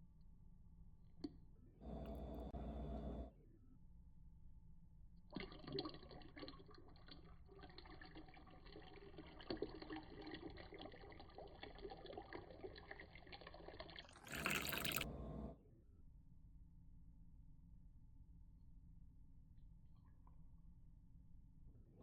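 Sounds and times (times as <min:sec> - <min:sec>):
liquid pouring into vessel: 0:05.4 - 0:15.1.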